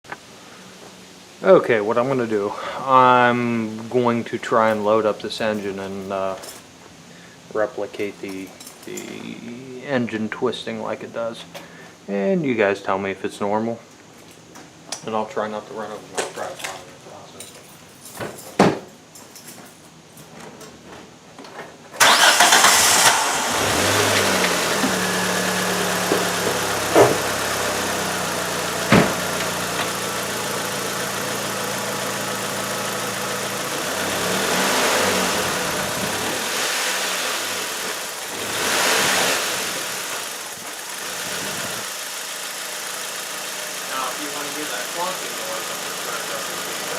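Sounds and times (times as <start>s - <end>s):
car engine starting and idling: 22.0s - 46.9s
sharp knocks: 28.9s - 29.3s.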